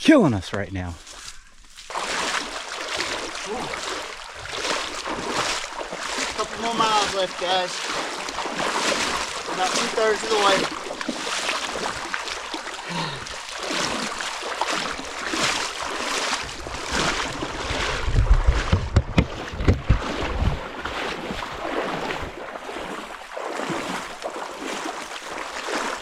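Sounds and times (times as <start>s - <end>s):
footsteps sloshing through water: 0.9s - 26.0s
low thumps on microphone: 17.9s - 20.7s.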